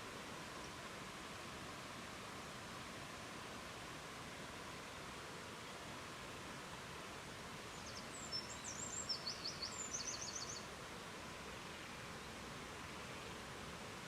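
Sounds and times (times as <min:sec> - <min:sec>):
flowing river water: 0:00.0 - 0:14.0
small bird singing: 0:07.7 - 0:10.7.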